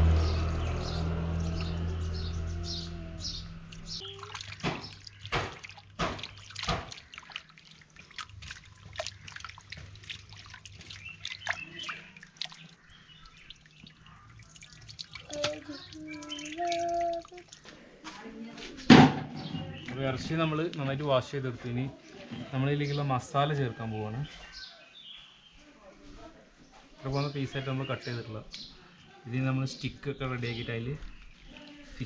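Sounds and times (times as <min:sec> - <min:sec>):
low rumble: 0:00.0 - 0:04.0
water splashing: 0:00.0 - 0:18.4.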